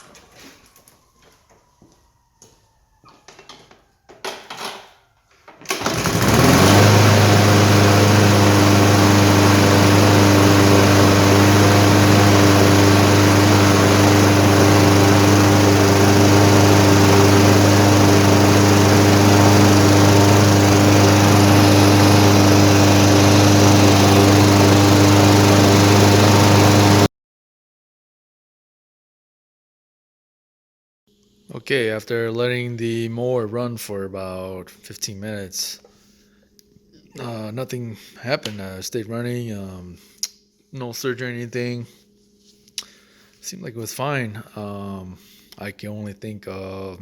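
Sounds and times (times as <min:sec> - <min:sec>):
lawn mower engine running: 0:05.7 - 0:27.1.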